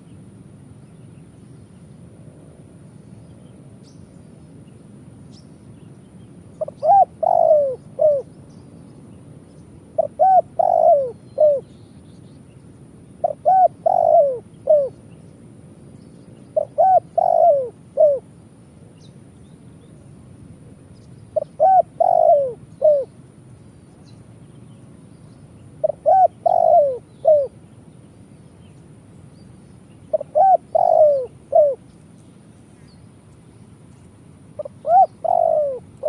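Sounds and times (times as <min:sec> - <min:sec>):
dove cooing: 0:06.6 - 0:08.3, 0:09.9 - 0:11.7, 0:13.2 - 0:15.0, 0:16.6 - 0:18.3, 0:21.3 - 0:23.2, 0:25.8 - 0:27.6, 0:30.1 - 0:31.9, 0:34.5 - 0:36.0.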